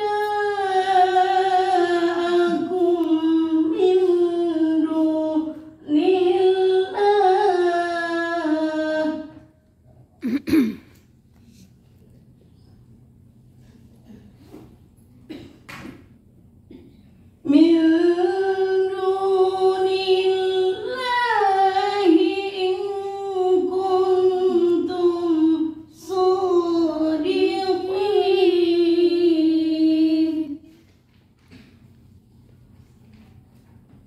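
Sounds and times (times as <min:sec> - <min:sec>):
woman chanting recitation: 0:00.0 - 0:09.5, 0:17.4 - 0:30.8.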